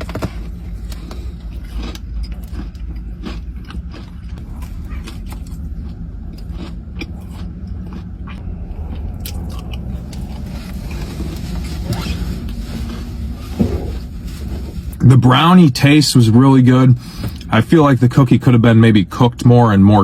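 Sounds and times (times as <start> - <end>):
person chewing: 0.0 - 11.5
steady low hum: 0.0 - 20.0.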